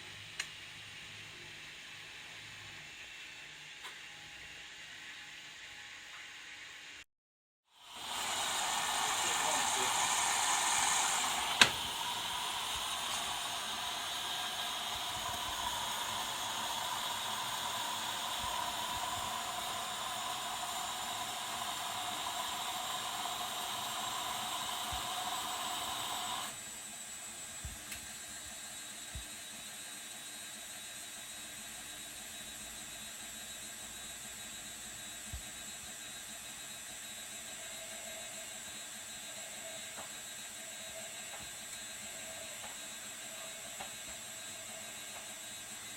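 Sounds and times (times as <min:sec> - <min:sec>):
water rushing into washing machine: 0:07.8 - 0:26.6
washing machine hum: 0:07.8 - 0:30.2.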